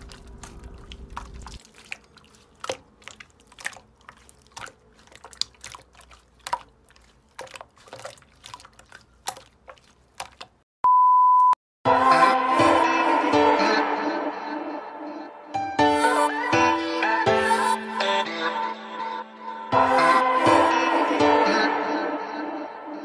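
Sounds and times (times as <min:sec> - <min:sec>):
slime squishing with wet pops: 0:00.0 - 0:10.6.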